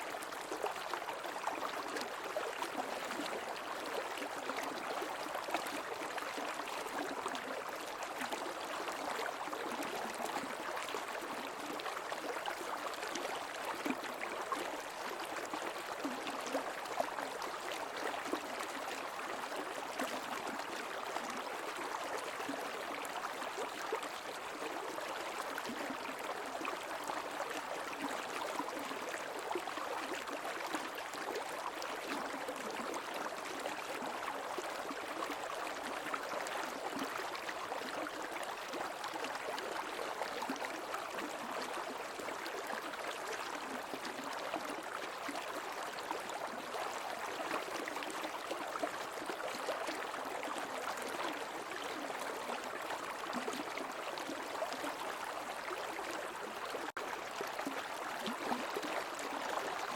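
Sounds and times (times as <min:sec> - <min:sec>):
creek water babbling over stones: 0:00.0 - 0:59.9.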